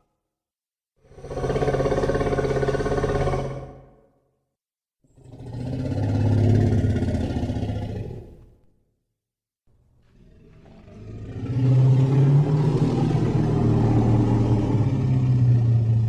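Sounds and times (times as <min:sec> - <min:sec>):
deep elephant bellow: 0:01.1 - 0:03.9, 0:05.2 - 0:08.4, 0:10.0 - 0:16.0.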